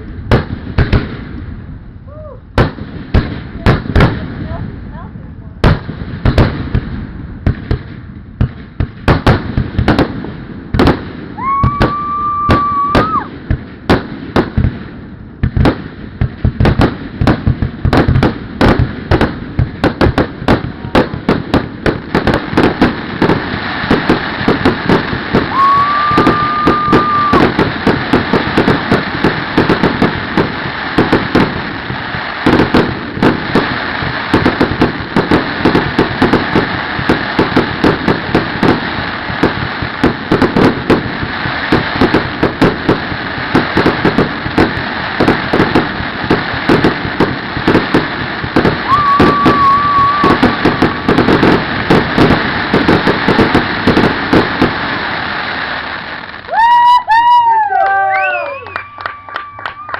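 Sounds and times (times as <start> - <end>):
fireworks bangs and crackles: 0.0 - 59.9
steady high whistle: 25.5 - 27.4, 48.9 - 50.9.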